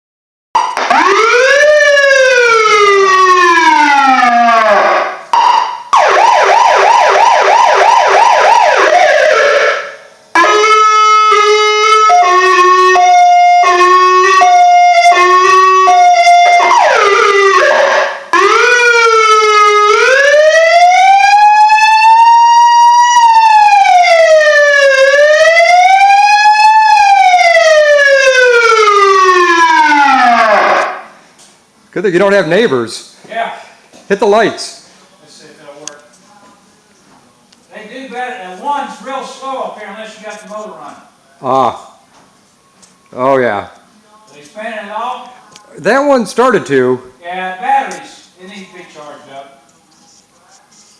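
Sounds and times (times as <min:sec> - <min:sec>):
police siren wail and yelp: 0:00.6 - 0:31.0.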